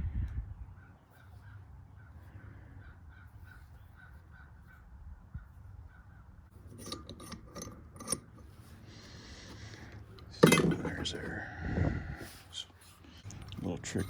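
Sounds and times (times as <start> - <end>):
rifle parts clicking metallically: 6.5 - 11.3, 13.2 - 14.0.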